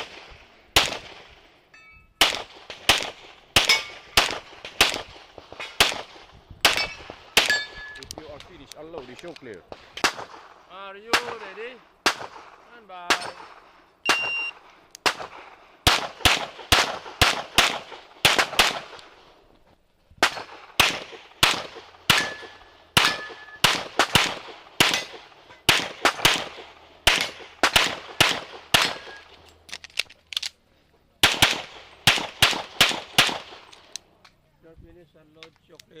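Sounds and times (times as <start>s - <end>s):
pistol shots: 0.0s - 1.4s, 2.2s - 19.3s, 20.2s - 29.4s, 31.2s - 33.9s
metallic ring: 1.7s - 2.2s
shot timer beep: 14.1s - 14.6s.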